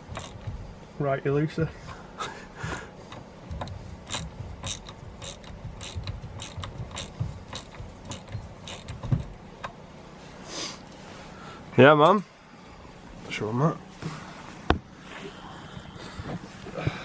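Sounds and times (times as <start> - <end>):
light mechanical clicks: 3.1 - 9.8
heavy thump: 5.6 - 8.4.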